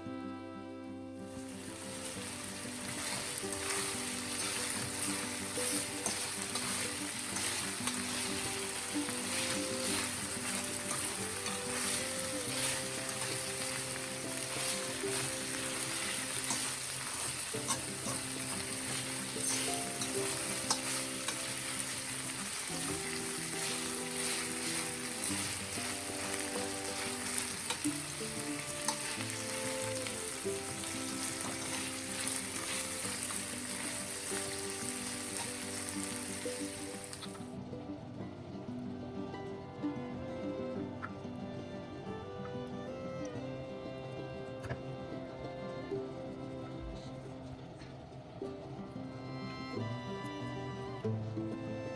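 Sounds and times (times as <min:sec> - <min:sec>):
quiet background music: 0:00.0 - 0:51.9
food sizzling in a pan: 0:01.2 - 0:37.6.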